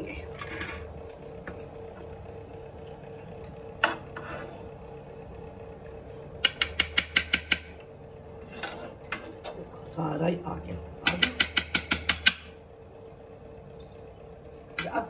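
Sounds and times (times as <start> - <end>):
spoon tapping a frying pan: 6.4 - 7.6, 11.1 - 12.4.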